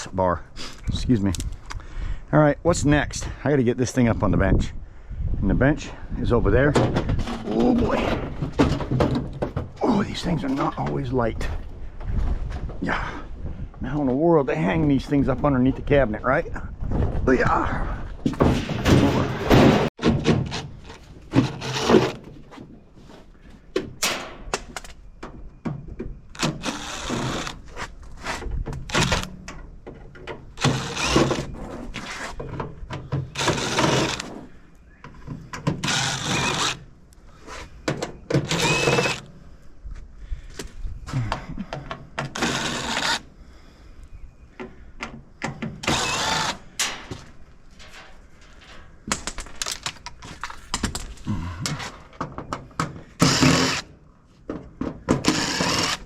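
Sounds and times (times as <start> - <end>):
knocks and clatter of parts: 6.6 - 12.8, 18.2 - 22.8, 23.4 - 36.8, 37.7 - 39.4, 40.6 - 43.2, 44.5 - 56.0
power drill running: 26.4 - 27.6, 30.6 - 31.4, 33.4 - 34.2, 35.8 - 36.8, 38.5 - 39.2, 42.4 - 43.2, 45.8 - 46.6, 53.2 - 53.8, 55.2 - 56.0.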